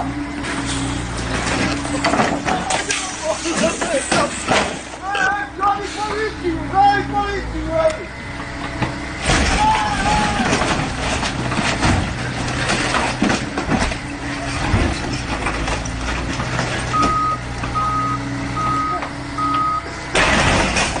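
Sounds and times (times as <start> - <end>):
heavy vehicle engine running: 0.0 - 21.0
engine knocks: 7.8 - 18.0, 18.6 - 21.0
reversing alarm beeps: 16.9 - 20.0.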